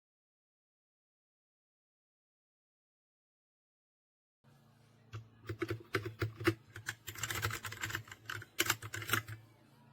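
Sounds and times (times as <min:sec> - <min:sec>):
mechanical keyboard typing: 0:05.4 - 0:09.4.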